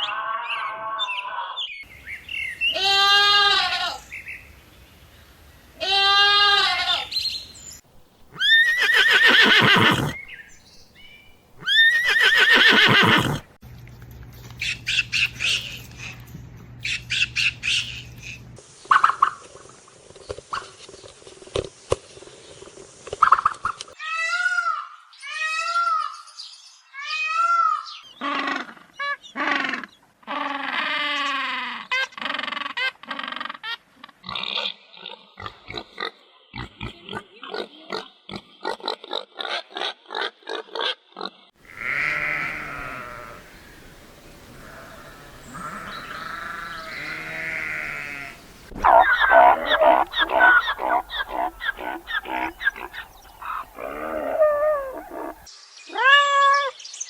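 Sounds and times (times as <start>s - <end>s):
farm animal calls: 8.2s - 10.4s, 11.6s - 13.5s, 39.4s - 56.3s.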